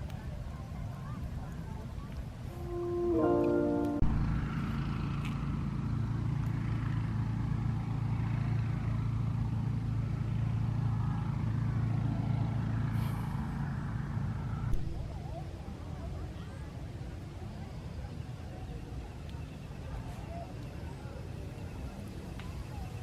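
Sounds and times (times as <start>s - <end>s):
road noise: 0.0s - 23.0s
vehicle engine humming: 2.4s - 14.7s
brief pitched tone: 2.6s - 4.2s.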